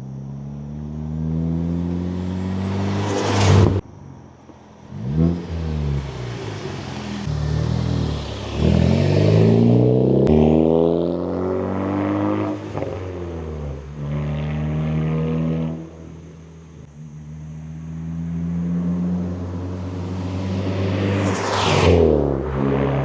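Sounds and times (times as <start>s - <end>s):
car engine accelerating past: 0.4s - 3.8s, 4.9s - 16.0s, 17.5s - 23.0s.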